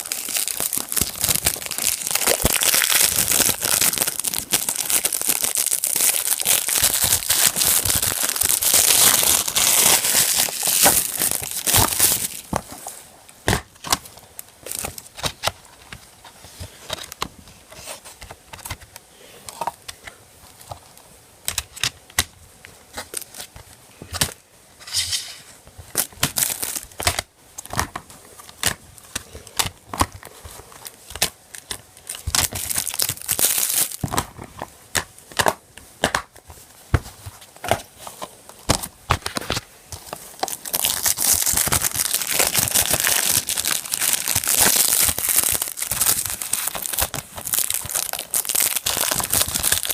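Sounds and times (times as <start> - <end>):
plastic wrapping tearing and crinkling: 0.0 - 12.8, 13.5 - 15.5, 25.9 - 34.4, 38.5 - 49.9.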